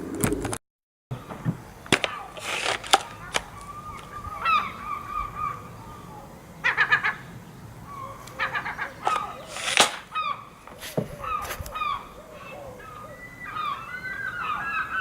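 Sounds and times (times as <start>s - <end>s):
honking bird calls: 1.1s - 15.0s
loud hissing noise: 1.6s - 12.4s.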